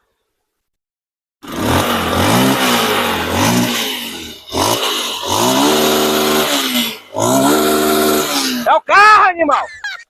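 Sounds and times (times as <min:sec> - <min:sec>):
car engine revving: 0:01.4 - 0:08.7.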